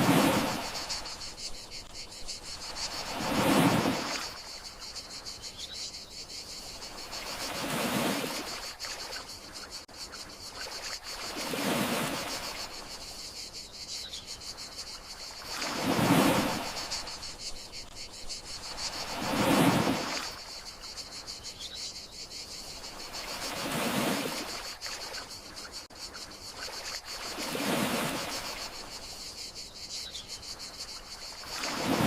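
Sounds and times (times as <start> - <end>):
sea waves washing ashore: 0.0 - 5.2, 6.7 - 9.9, 10.5 - 13.1, 15.2 - 20.9, 22.9 - 25.8, 26.6 - 29.1, 31.2 - 32.0
crickets chirping: 0.0 - 32.0.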